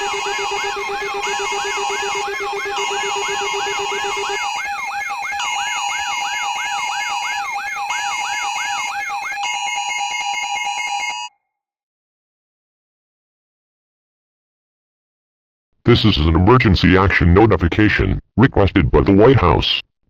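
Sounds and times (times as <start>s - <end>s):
beeping alarm tones: 0.0s - 11.3s
yelping siren: 0.0s - 11.3s.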